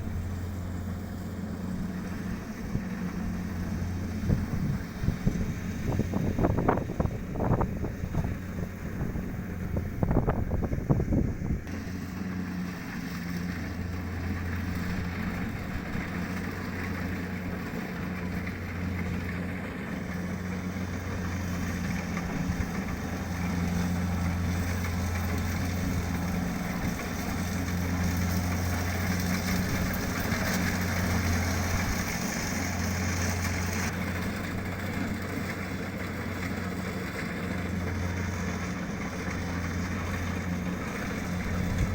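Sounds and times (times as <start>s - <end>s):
diesel engine running: 0.0s - 41.9s
wind buffeting microphone: 2.5s - 11.7s, 40.4s - 41.9s.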